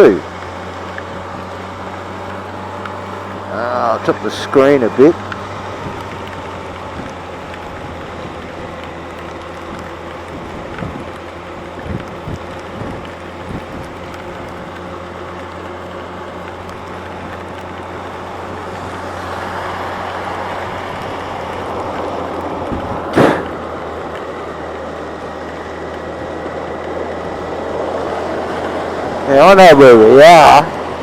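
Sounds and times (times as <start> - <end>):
motorcycle engine humming: 0.0 - 31.0
rain: 0.0 - 31.0
wind noise: 4.9 - 15.0, 19.1 - 23.9
loud burst of noise: 23.1 - 23.6.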